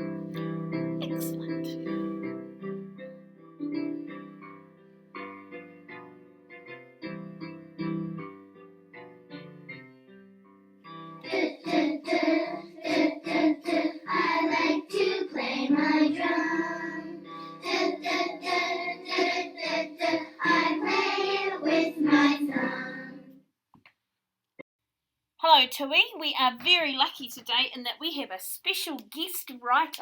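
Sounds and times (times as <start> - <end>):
children singing: 11.2 - 23.3.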